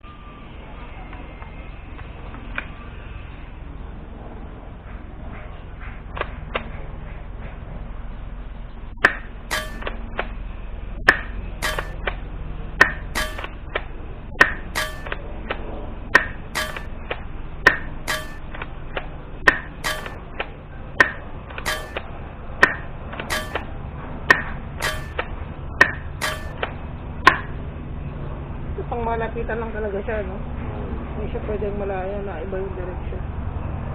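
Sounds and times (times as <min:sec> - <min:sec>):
airsoft shotgun shots: 0:09.0 - 0:10.0, 0:11.1 - 0:12.1, 0:12.8 - 0:13.6, 0:14.4 - 0:15.2, 0:16.2 - 0:16.9, 0:17.7 - 0:18.6, 0:19.5 - 0:20.4
brief metallic ping: 0:09.0 - 0:10.1, 0:11.1 - 0:12.0, 0:12.8 - 0:13.6, 0:14.4 - 0:15.2, 0:16.2 - 0:16.9, 0:17.7 - 0:18.6, 0:19.5 - 0:20.3, 0:21.0 - 0:23.7, 0:24.3 - 0:25.3, 0:26.2 - 0:26.7.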